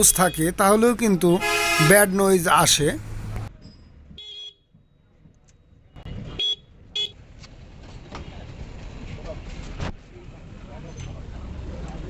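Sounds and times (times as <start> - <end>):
vehicle horn toots: 1.4 - 2.1, 4.2 - 4.7.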